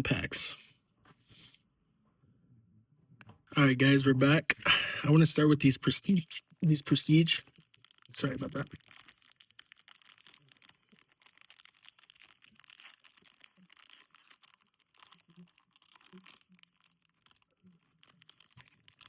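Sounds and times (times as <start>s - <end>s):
foil wrapper crinkling and tearing: 5.1s - 19.0s.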